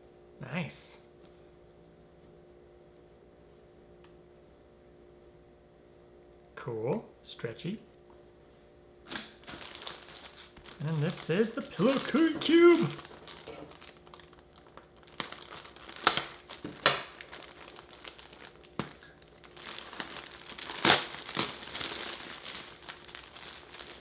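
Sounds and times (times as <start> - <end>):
packaging crinkling: 9.1 - 24.0.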